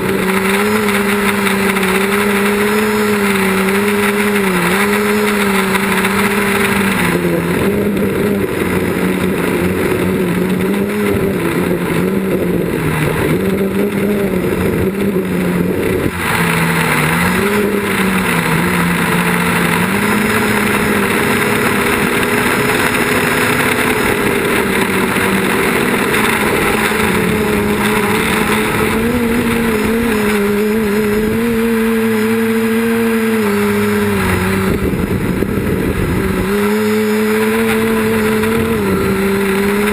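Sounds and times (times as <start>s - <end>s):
drone propellers buzzing: 0.0s - 39.9s.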